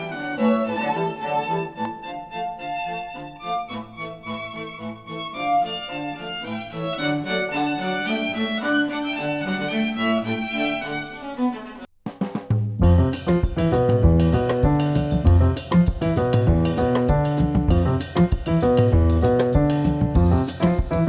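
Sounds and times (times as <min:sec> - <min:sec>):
violin and cello string music: 0:00.0 - 0:11.9
instrumental music through headphones: 0:12.8 - 0:21.0.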